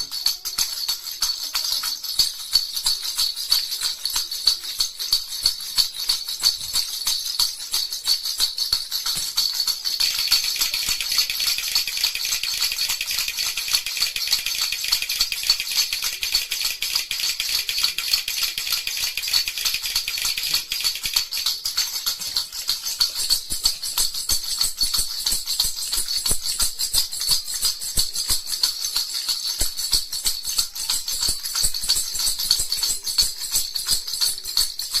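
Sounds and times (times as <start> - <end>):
baby rattle shaken: 0.0 - 35.0.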